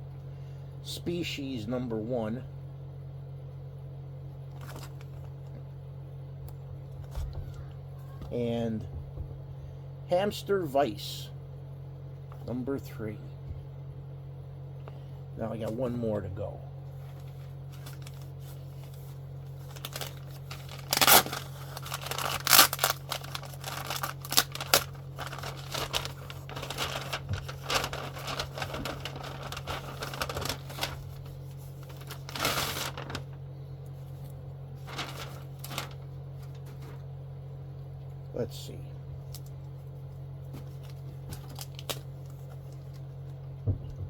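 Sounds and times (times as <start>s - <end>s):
steady low hum: 0.0s - 44.0s
packaging crinkling and tearing: 4.5s - 5.3s, 17.2s - 33.4s, 34.8s - 37.0s, 40.8s - 43.0s.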